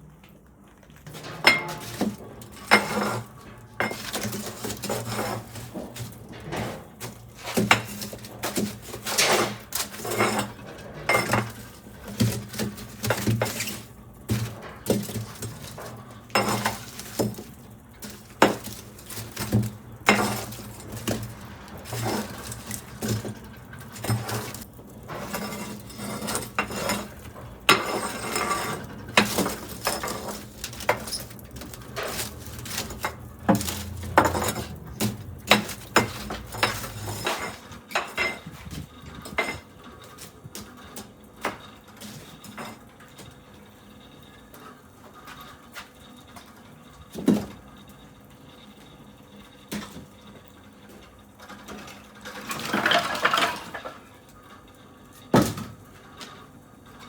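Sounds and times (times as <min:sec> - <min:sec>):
metal clinking and clattering: 0:01.0 - 0:39.6.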